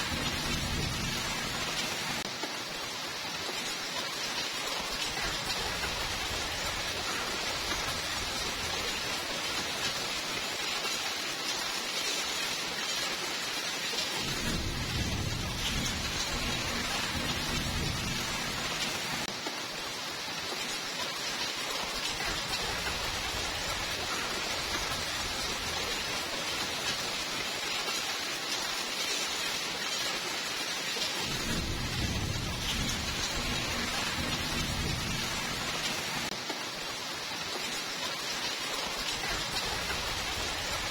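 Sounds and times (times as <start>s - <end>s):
rolling thunder rumble: 0.0s - 2.2s, 14.2s - 19.3s, 31.2s - 36.3s
steady rain hiss: 0.0s - 40.9s.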